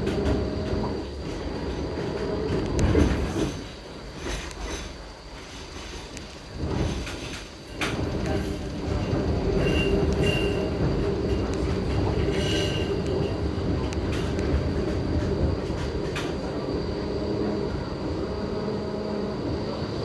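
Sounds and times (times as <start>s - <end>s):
streetcar rumbling on rails: 0.0s - 20.0s
high wheel squeals: 7.7s - 13.5s.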